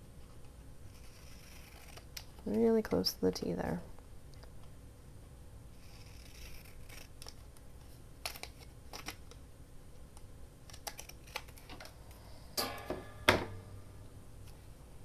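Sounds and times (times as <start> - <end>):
scissors snipping paper: 0.9 - 2.6, 5.8 - 7.6, 8.2 - 9.4, 10.6 - 11.9.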